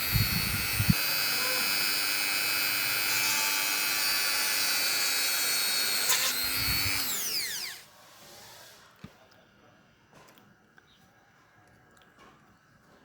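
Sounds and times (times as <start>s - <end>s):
small electric motor whining: 0.0s - 8.8s.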